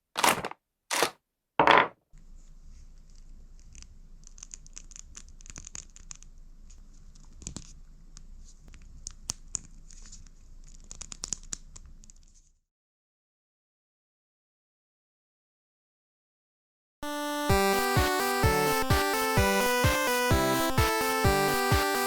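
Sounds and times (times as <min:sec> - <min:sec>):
low steady hum: 0:02.2 - 0:12.4
faint scratching and clicks: 0:02.2 - 0:12.6.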